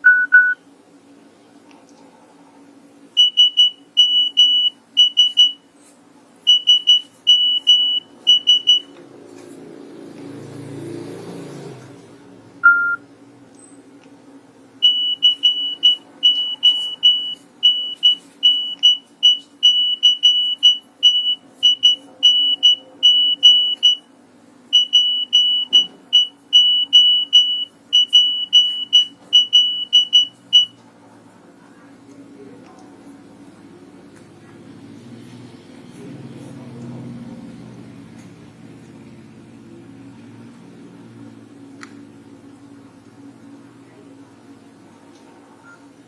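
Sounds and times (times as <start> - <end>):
mobile phone beeping ringtone: 0.0 - 0.6, 6.5 - 8.9, 12.6 - 13.0, 14.8 - 24.0, 24.8 - 30.7
single lower beep: 0.0 - 0.6, 12.6 - 13.0.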